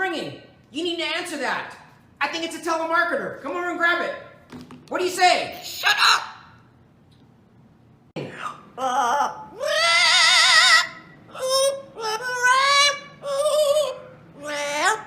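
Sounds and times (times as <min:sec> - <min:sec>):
parrot singing with vibrato: 0:08.8 - 0:15.0.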